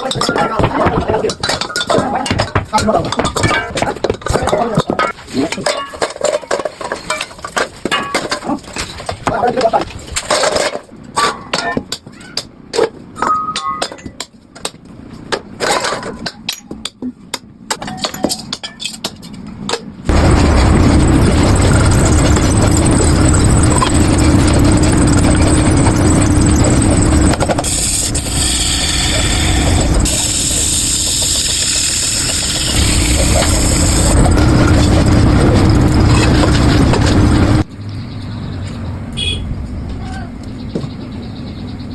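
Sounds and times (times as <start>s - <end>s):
metalworking machinery running: 20.1s - 37.7s.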